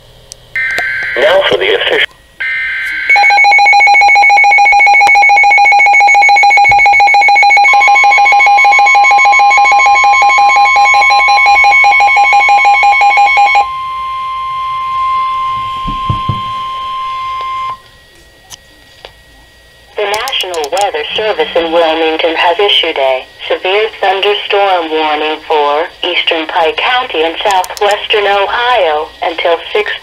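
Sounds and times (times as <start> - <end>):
higher alarm tone: 0.6 - 18.6
pulsing alarm tone: 0.6 - 20.2
steady tone: 0.6 - 25.7.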